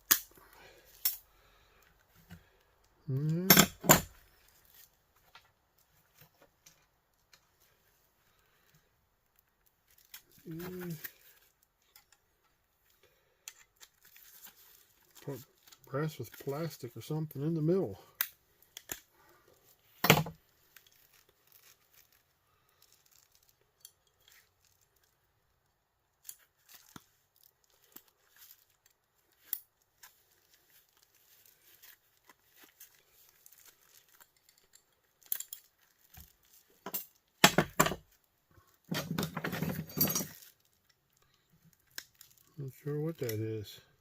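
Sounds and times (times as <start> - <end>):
metal and plastic parts clinking: 3.2 - 4.9, 20.0 - 25.2, 26.2 - 42.5
scraping and rattling: 38.8 - 40.5.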